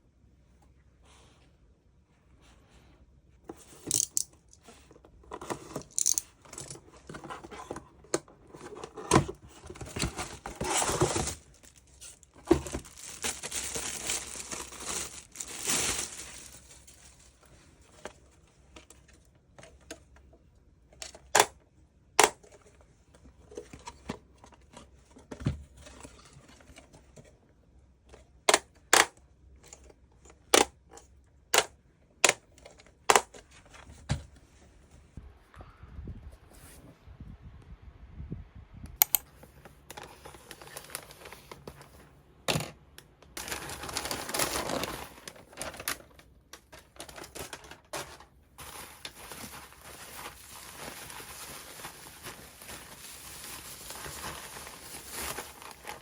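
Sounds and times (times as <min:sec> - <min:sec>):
packaging rustling and tearing: 0:08.5 - 0:18.0, 0:39.9 - 0:42.0, 0:43.4 - 0:56.0.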